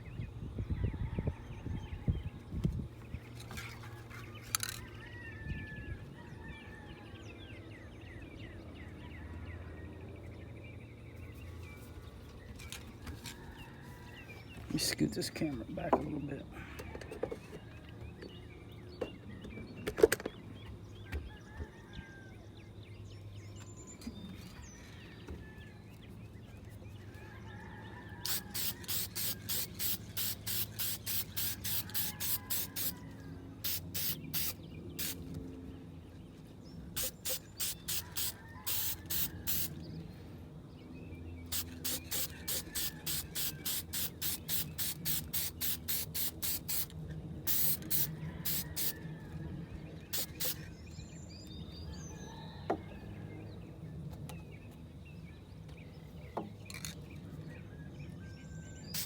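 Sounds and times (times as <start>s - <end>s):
aerosol can spraying: 28.2s - 33.0s, 33.6s - 35.2s, 37.0s - 39.8s, 41.5s - 46.9s, 47.5s - 49.0s, 50.1s - 50.6s.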